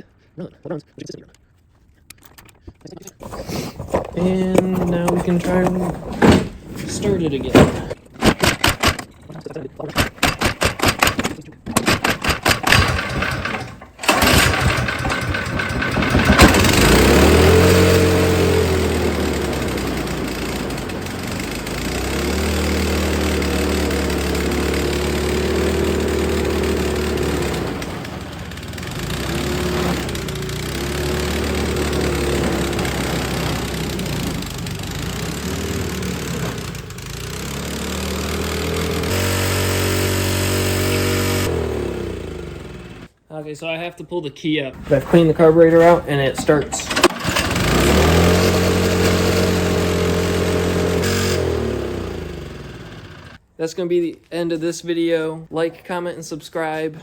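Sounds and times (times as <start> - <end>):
small engine cranking and running: 6.9 - 9.2, 9.8 - 43.1, 44.8 - 53.4.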